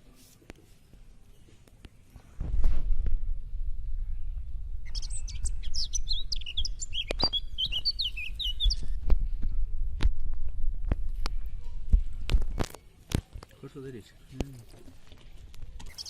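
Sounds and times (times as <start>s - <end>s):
low rumble: 2.4s - 12.4s
small bird chirping: 4.8s - 9.2s, 14.8s - 16.0s.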